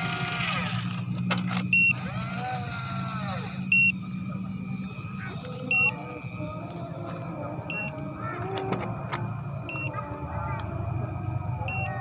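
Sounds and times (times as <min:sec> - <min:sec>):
high electronic beep: 0:01.7 - 0:02.1, 0:03.7 - 0:04.0, 0:05.7 - 0:06.1, 0:07.7 - 0:08.0, 0:09.7 - 0:09.9, 0:11.6 - 0:12.0
faint voices: 0:02.2 - 0:12.0.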